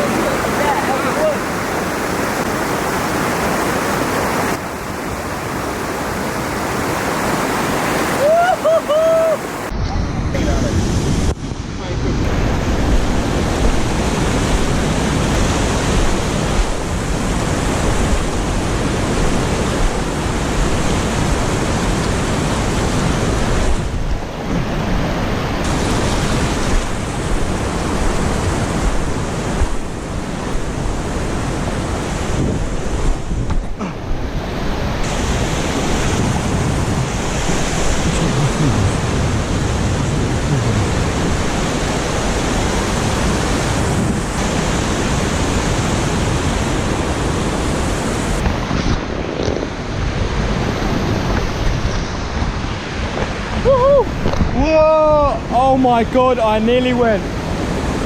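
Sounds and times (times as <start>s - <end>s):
waterfall rushing: 0.0s - 9.7s, 33.8s - 58.0s.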